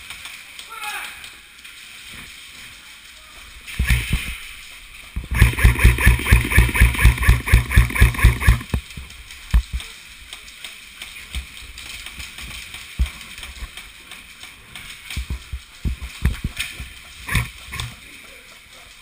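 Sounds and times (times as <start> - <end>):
airsoft rifle shots: 5.3 - 8.8.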